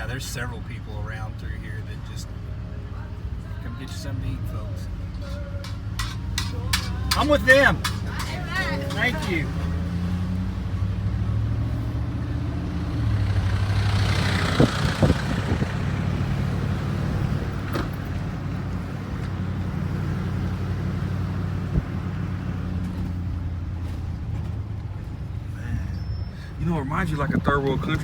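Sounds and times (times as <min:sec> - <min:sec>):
road noise: 0:00.0 - 0:28.0
car engine running: 0:03.0 - 0:25.4
sharp knocks: 0:05.6 - 0:09.8.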